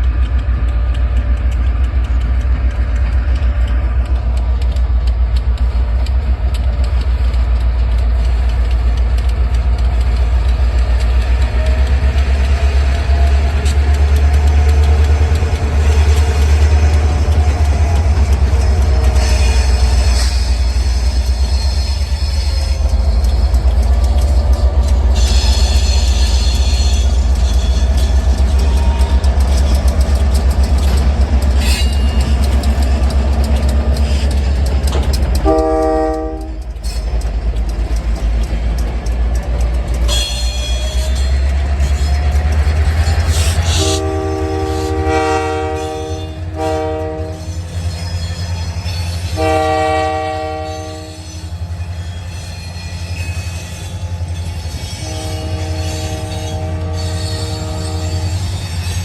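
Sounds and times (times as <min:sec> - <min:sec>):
diesel locomotive rumbling: 0:00.0 - 0:59.0
train air horn blasts: 0:35.4 - 0:36.6, 0:43.6 - 0:47.7, 0:49.3 - 0:51.5, 0:55.0 - 0:58.6.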